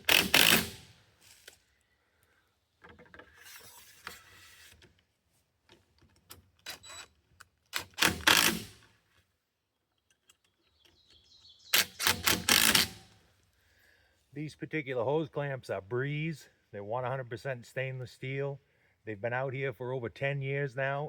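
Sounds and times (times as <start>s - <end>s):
short rasping bursts: 0.0s - 1.4s, 7.8s - 8.9s, 11.7s - 13.2s
hose clamps clicking: 0.0s - 1.6s, 5.7s - 8.9s, 11.7s - 13.2s.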